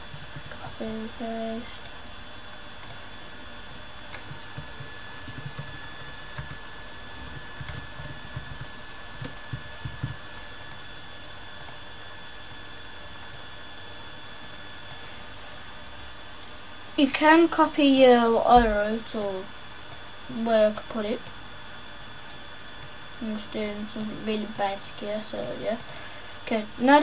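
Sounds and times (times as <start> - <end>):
faint high whine: 0.0 - 27.0
keyboard and mouse clicks: 7.2 - 10.2.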